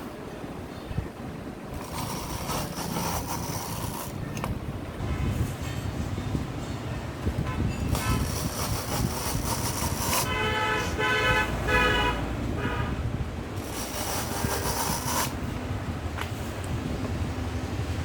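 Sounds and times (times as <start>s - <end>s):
engine and traffic rumble: 0.0s - 18.0s
vehicle horn honking: 7.4s - 8.4s, 10.2s - 13.1s.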